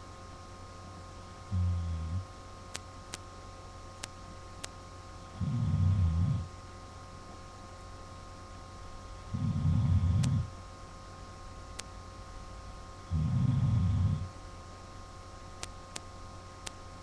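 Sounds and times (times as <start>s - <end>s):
man snoring: 1.5s - 2.2s, 5.3s - 6.5s, 9.3s - 10.5s, 13.1s - 14.3s
faint ticks: 10.2s - 10.4s.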